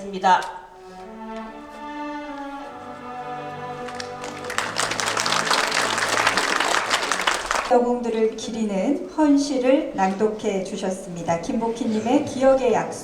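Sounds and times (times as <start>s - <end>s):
slow bowed string music: 0.0s - 7.7s
audience applauding: 1.0s - 7.7s.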